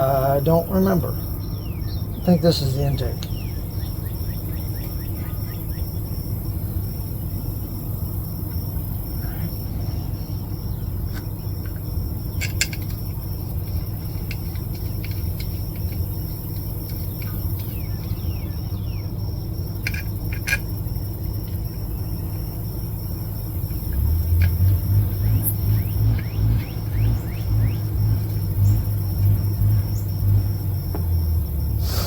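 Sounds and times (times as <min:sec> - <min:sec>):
constant thin high tone: 0:00.0 - 0:08.2
low background rumble: 0:00.0 - 0:32.0
light clicks and taps of parts: 0:03.1 - 0:03.4, 0:12.4 - 0:13.0, 0:13.6 - 0:18.2, 0:19.8 - 0:20.7.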